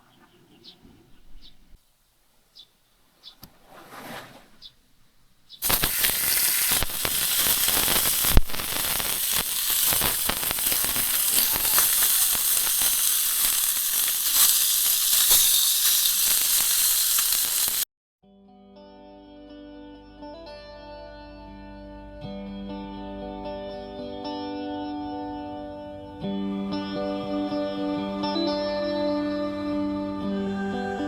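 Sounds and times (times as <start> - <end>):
food sizzling and crackling: 5.6 - 17.9.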